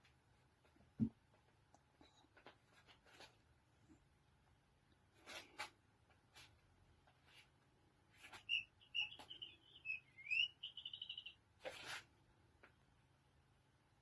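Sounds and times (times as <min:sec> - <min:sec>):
electronic toy squeaks and chirps: 0:08.2 - 0:11.4.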